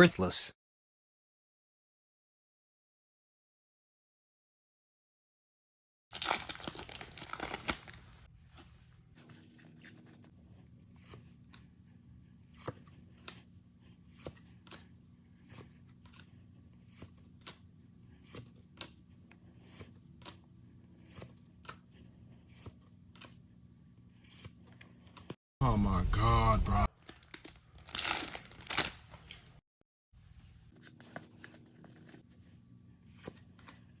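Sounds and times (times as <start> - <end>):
foil wrapper crinkling and tearing: 6.1 - 8.3, 26.9 - 29.6.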